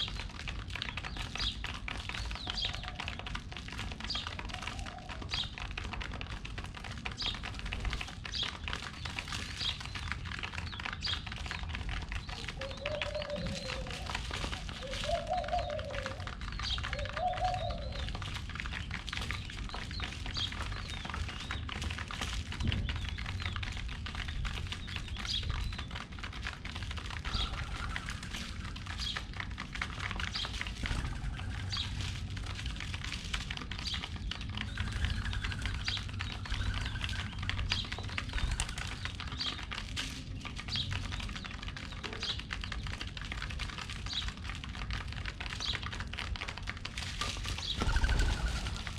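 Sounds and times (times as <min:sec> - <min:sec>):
beaks tapping on ground: 0:00.0 - 0:48.9
pigeons cooing: 0:02.2 - 0:06.0, 0:11.9 - 0:21.2, 0:27.0 - 0:39.8, 0:47.5 - 0:48.9
high bird chirps: 0:47.7 - 0:48.9.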